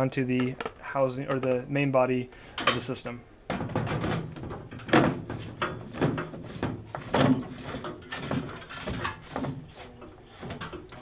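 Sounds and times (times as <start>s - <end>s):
filter housing knocking and scraping: 3.5s - 11.0s.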